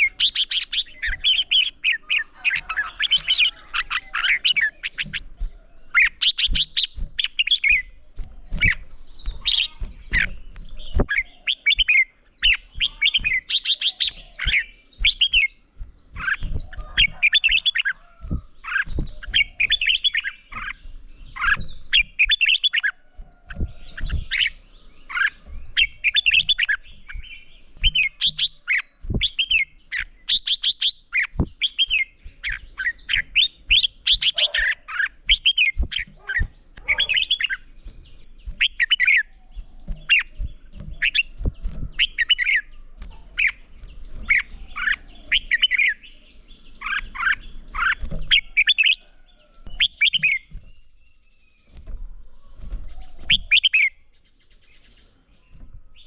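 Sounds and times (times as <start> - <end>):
bird sharp clicks: 0.0 - 49.0
bird whistled song phrases: 0.0 - 56.0.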